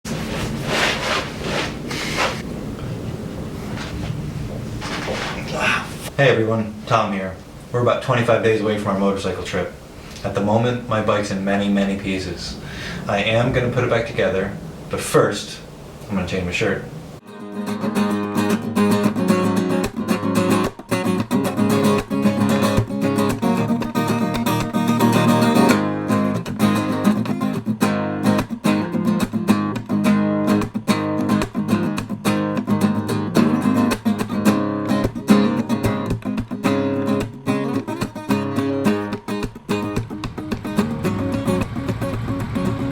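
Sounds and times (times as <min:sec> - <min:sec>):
acoustic guitar plucked and strummed: 0:17.2 - 0:42.9.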